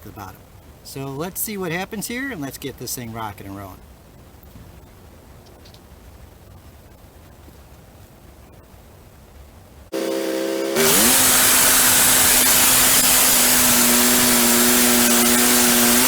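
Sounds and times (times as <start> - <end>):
bandsaw mill running: 10.0 - 16.0.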